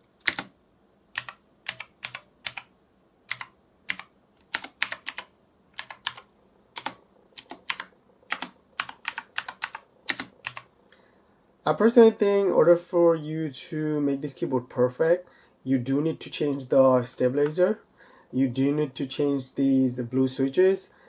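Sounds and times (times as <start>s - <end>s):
mechanical keyboard keystroke clicks: 3.3s - 6.2s, 6.8s - 10.7s.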